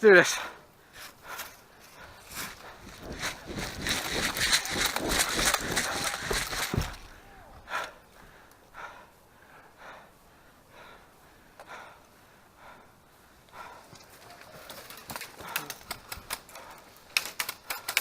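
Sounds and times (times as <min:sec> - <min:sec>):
person breathing hard: 0:00.4 - 0:14.2, 0:15.2 - 0:18.0
close rustling movement: 0:00.9 - 0:07.2.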